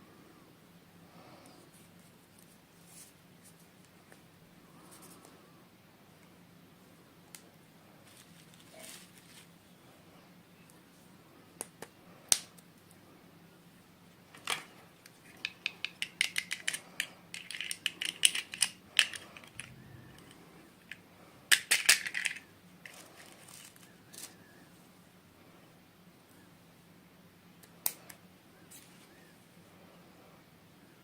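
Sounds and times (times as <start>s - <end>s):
plastic toy pieces clicking: 15.4s - 23.0s
plastic rattling: 15.4s - 24.4s.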